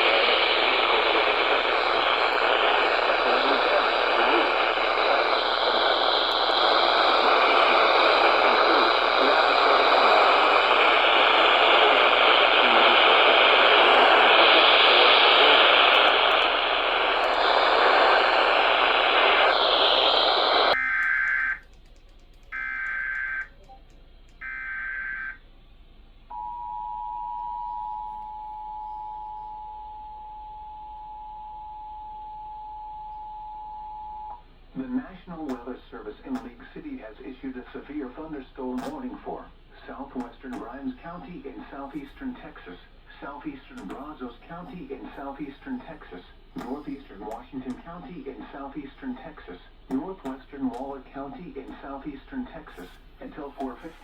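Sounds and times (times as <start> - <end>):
radio static hiss: 0.0 - 25.4, 34.7 - 54.0
screeching data bursts: 20.7 - 21.6, 22.5 - 23.6
two-tone attention signal: 20.8 - 21.6.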